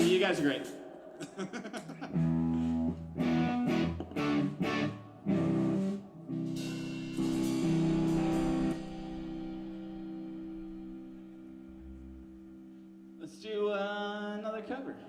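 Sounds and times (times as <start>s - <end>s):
guitar strumming chords: 2.1s - 12.7s.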